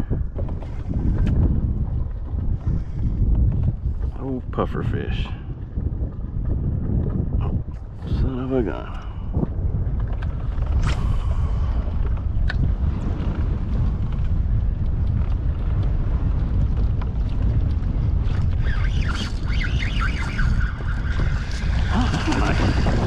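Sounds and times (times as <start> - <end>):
wind buffeting microphone: 0.0 - 23.0
splashy rustling: 21.4 - 23.0.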